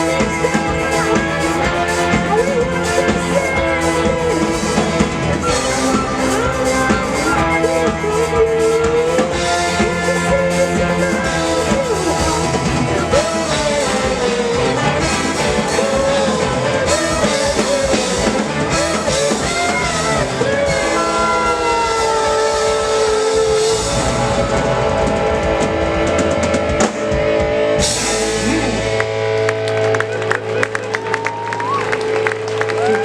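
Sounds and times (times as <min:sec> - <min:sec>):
rock band with horns and violin: 0:00.0 - 0:33.0.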